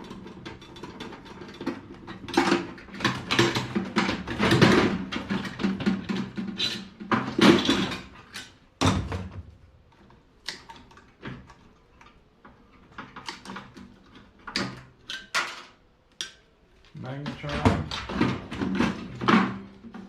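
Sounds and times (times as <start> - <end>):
metal clanks and scrapes: 0.0 - 8.5.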